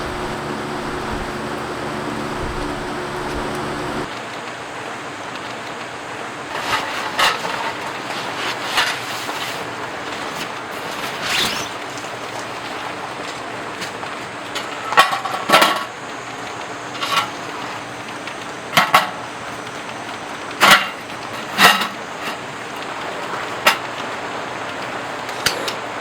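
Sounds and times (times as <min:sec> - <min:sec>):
low hum: 0:00.0 - 0:04.1
rain hiss: 0:00.0 - 0:13.8.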